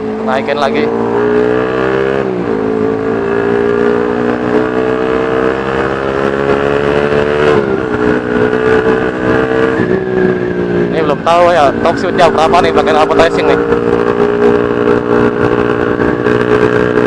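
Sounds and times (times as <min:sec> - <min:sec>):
motorcycle engine accelerating: 0:00.0 - 0:17.0.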